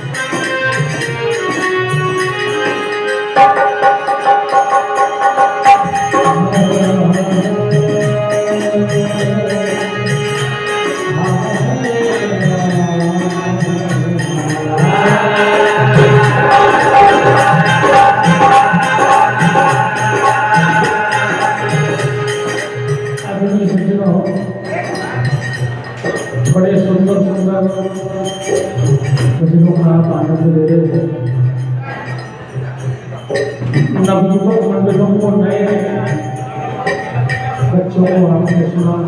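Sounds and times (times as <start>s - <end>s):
sustained melody notes: 0.0s - 30.2s
jingling percussion: 0.0s - 39.0s
person singing: 3.4s - 25.3s
drum beat: 14.8s - 23.4s.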